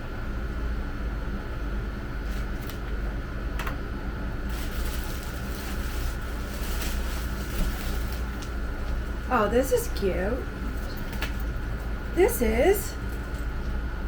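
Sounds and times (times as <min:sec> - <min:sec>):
steady low hum: 0:00.0 - 0:14.0
packaging rustling and crinkling: 0:04.4 - 0:09.3.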